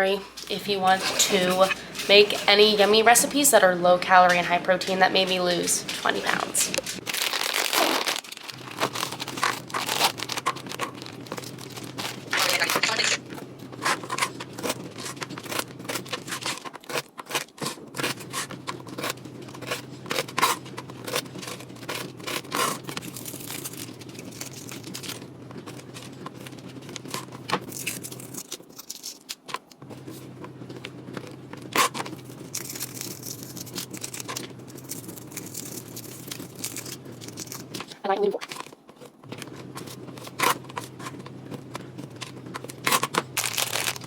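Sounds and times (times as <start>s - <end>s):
steady low hum: 0.0s - 7.1s
utensils scraping and clicking: 0.4s - 3.5s
packaging tearing and rustling: 5.8s - 30.1s, 31.1s - 44.0s.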